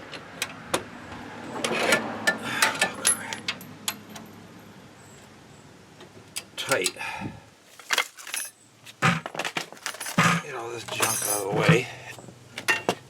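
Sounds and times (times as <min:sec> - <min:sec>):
scraping rustle: 0:07.7 - 0:11.9.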